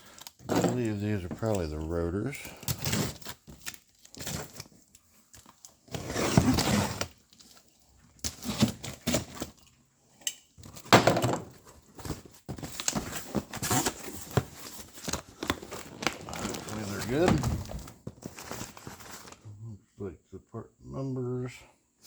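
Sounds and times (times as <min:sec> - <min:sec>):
cardboard box rustling and scraping: 0:05.8 - 0:07.2, 0:11.6 - 0:19.4.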